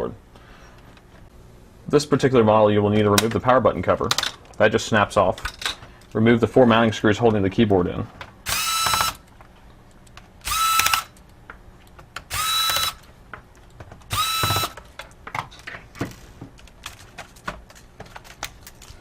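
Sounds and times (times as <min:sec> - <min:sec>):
electric screwdriver whining: 0:08.5 - 0:09.2, 0:10.4 - 0:11.1, 0:12.3 - 0:13.0, 0:14.1 - 0:14.8.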